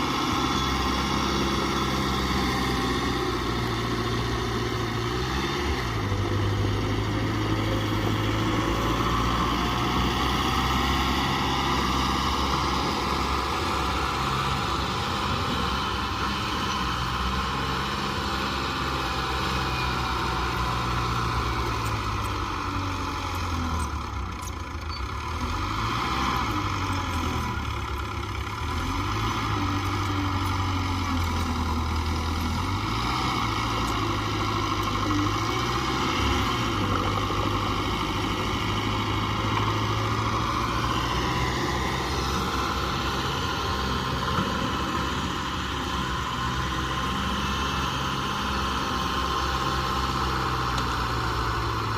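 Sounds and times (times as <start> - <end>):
bulldozer diesel engine running: 0.0 - 51.9.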